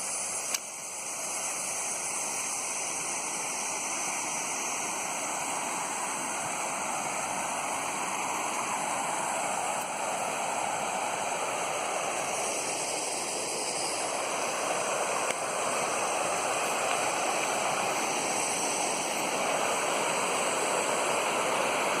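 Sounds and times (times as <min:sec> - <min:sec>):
rushing water: 0:04.6 - 0:22.0.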